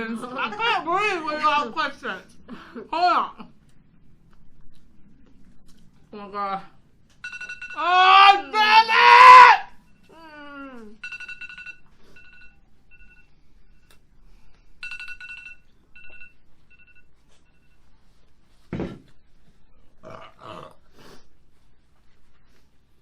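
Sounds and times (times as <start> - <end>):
timer alarm beeps: 11.0 - 17.9.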